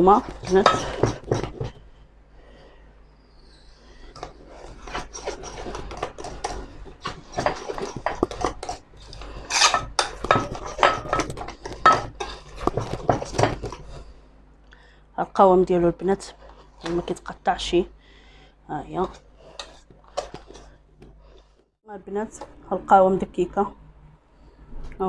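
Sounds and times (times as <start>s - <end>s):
utensil scraping mixing bowl: 0.0s - 1.9s, 3.8s - 14.2s, 15.8s - 17.7s, 18.7s - 21.6s.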